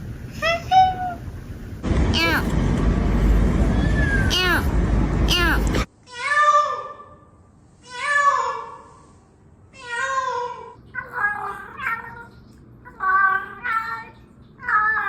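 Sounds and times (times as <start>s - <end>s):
cat meowing: 3.7s - 4.6s.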